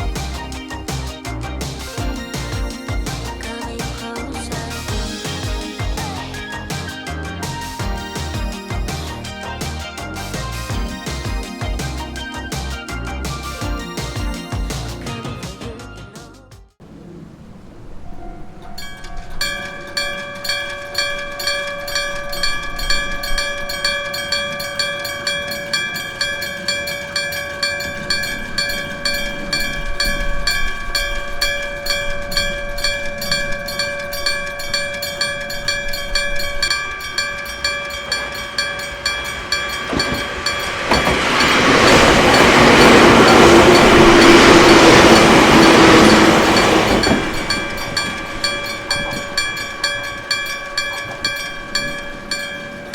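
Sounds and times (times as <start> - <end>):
passing train rumble: 0.0 - 15.2, 16.8 - 52.9
level crossing bell ringing: 0.0 - 15.4, 18.2 - 52.9.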